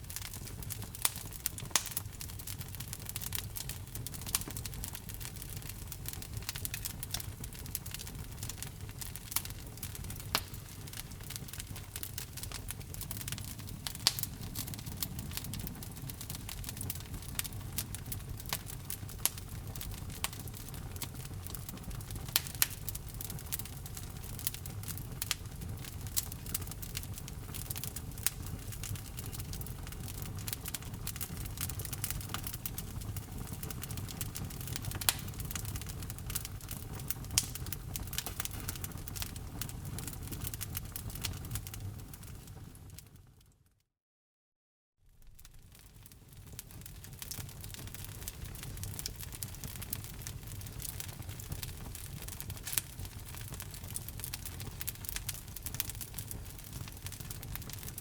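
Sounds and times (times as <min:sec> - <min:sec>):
wood fire crackling: 0:00.0 - 0:43.2, 0:45.2 - 0:58.0
low rumble of flames: 0:00.0 - 0:43.3, 0:45.1 - 0:58.0.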